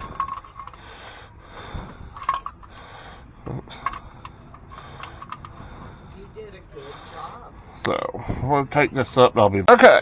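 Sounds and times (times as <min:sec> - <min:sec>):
tools clicking and knocking: 0:00.0 - 0:00.9, 0:02.1 - 0:02.9, 0:03.5 - 0:05.6.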